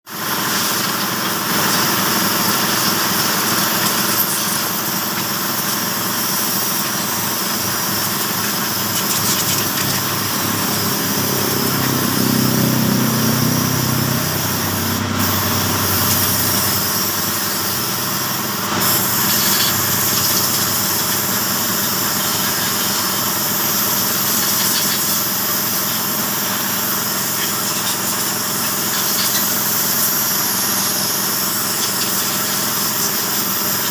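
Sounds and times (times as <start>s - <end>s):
small engine running: 0.1s - 33.9s
heavy low rumble: 9.4s - 17.8s.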